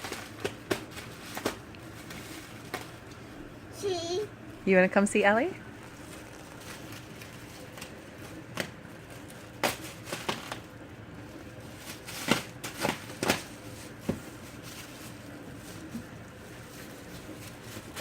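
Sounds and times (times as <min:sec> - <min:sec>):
cardboard box knocks and crinkles: 0:12.2 - 0:14.4.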